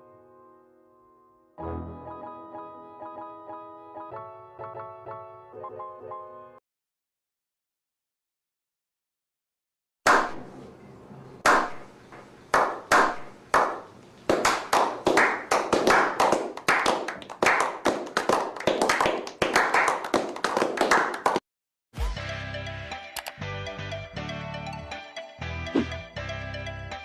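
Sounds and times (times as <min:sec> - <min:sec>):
hand clapping with echo: 0:11.4 - 0:11.9, 0:12.5 - 0:21.4.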